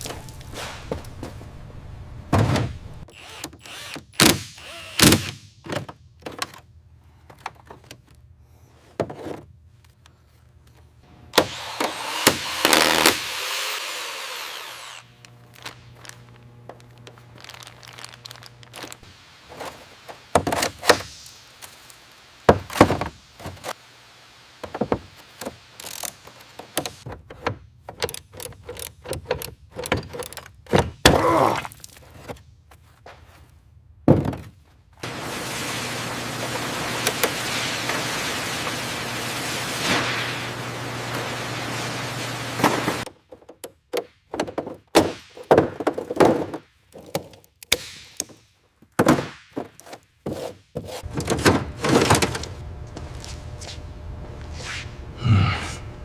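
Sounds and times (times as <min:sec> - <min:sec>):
hiss: 0:19.6 - 0:23.9, 0:35.0 - 0:43.0.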